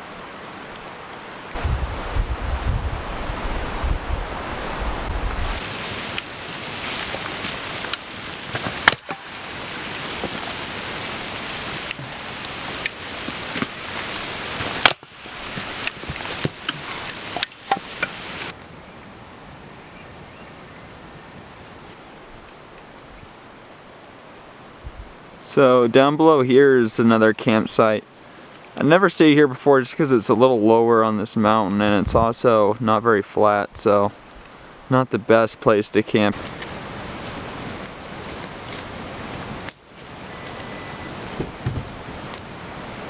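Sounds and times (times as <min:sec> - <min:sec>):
wind-driven rain hiss: 0:00.0 - 0:29.5, 0:33.8 - 0:35.1, 0:36.2 - 0:43.0
wind buffeting microphone: 0:01.5 - 0:21.6, 0:24.8 - 0:25.2, 0:36.3 - 0:43.0.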